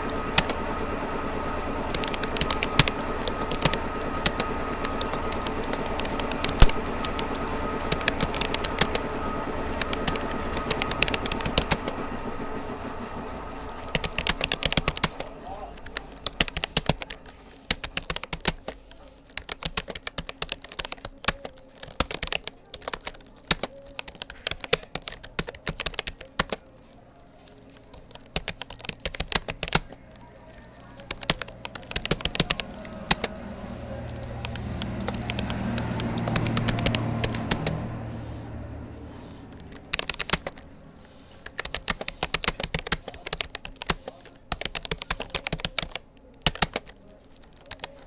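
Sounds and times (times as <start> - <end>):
low hum: 0.0 - 19.4, 26.2 - 44.3
keyboard key clicks: 13.8 - 18.8, 19.4 - 26.6, 27.9 - 30.0, 41.5 - 48.0.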